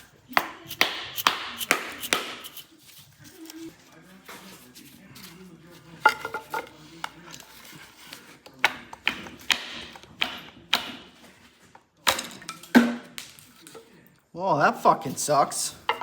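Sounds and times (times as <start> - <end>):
hand tools clinking on metal: 15.5 - 16.0.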